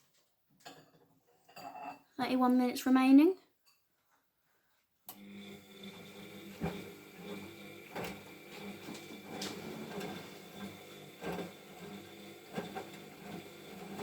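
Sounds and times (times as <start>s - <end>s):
washing machine motor humming: 5.1s - 14.0s.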